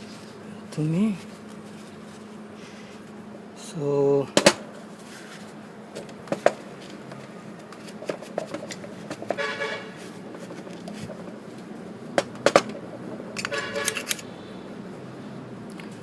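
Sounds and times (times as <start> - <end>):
tools and brake parts clicking: 6.0 - 9.6, 10.2 - 14.3.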